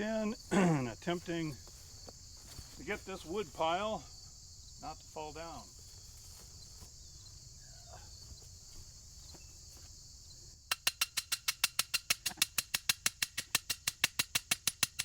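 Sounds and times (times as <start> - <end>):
high insect buzz: 0.0 - 15.0
animal call of sharp clicks: 10.7 - 15.0.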